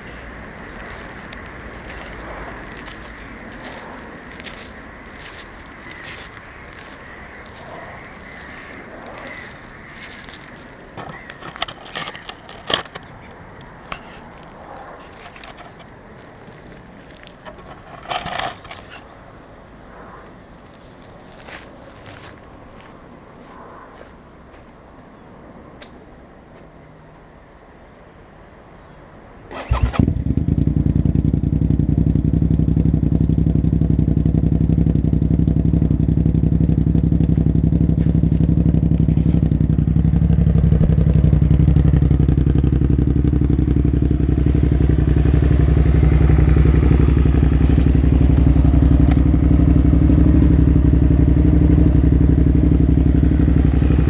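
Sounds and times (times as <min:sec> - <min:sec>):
motorcycle engine idling: 0:00.0 - 0:13.1, 0:29.6 - 0:54.0
motorcycle engine starting: 0:16.7 - 0:19.1, 0:29.5 - 0:54.0.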